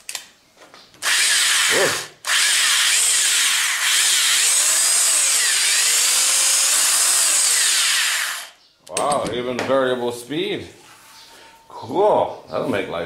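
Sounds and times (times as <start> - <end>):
electric hammer drill running: 1.0 - 8.6.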